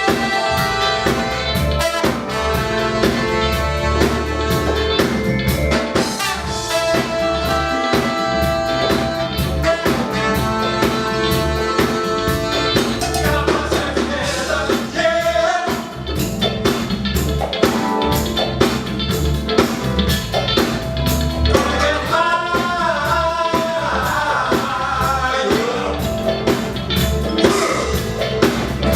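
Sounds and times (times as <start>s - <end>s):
drum kit beat: 0.0s - 28.9s
live funk band: 0.0s - 28.9s
person singing: 13.0s - 16.1s, 21.5s - 26.1s, 27.3s - 28.2s.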